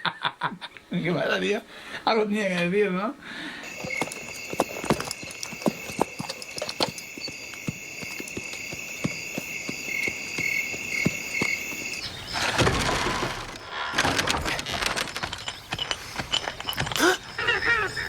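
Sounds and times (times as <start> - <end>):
hooves clopping: 3.6 - 13.6, 14.4 - 18.0
insects chirring: 3.6 - 18.0.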